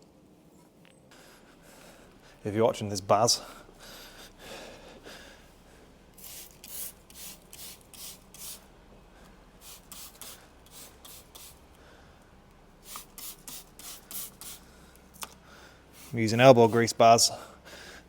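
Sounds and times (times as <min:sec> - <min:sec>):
hissy hand cleaning strokes: 0:06.2 - 0:08.7, 0:09.6 - 0:11.7, 0:12.8 - 0:14.7, 0:15.9 - 0:17.1.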